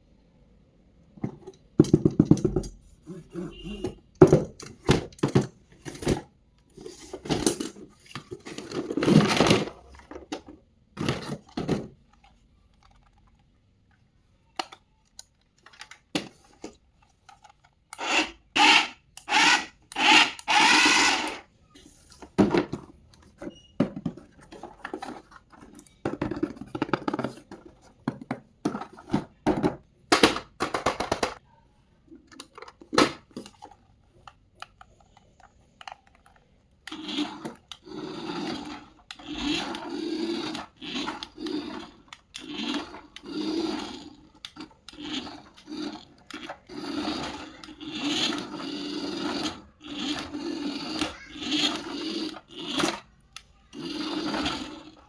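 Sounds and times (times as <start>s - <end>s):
toy car electric motor running: 17.9s - 21.5s, 36.8s - 55.0s
plastic clicks and knocks: 22.2s - 31.4s.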